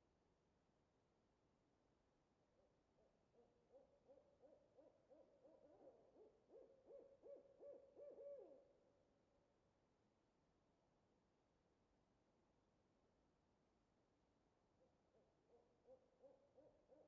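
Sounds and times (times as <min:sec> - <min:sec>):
owl hooting: 0:03.4 - 0:08.8, 0:15.5 - 0:17.0.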